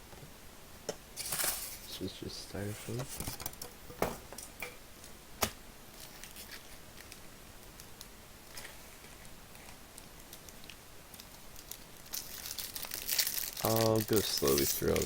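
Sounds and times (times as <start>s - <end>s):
packaging ticks and rustles: 5.9s - 15.0s.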